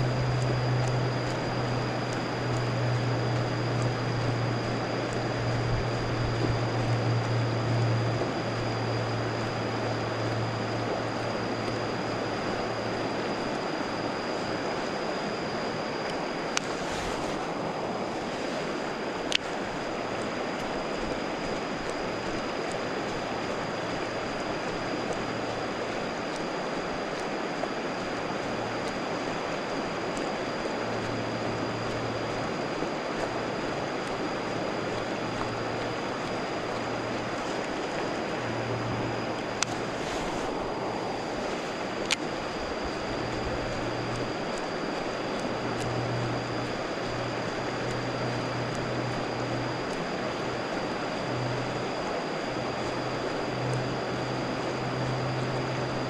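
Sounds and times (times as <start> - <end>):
low hum: 0.0 - 56.0
rushing water: 0.0 - 56.0
thin high-pitched whine: 0.0 - 56.0
sharp clicks: 41.9 - 42.5.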